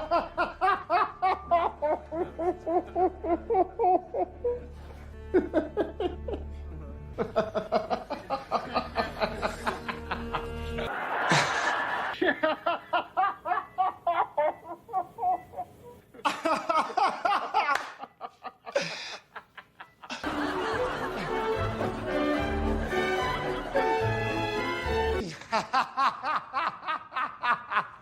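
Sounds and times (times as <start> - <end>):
person laughing: 0.0 - 4.7, 7.2 - 21.5
background music: 0.0 - 12.2, 19.9 - 26.1.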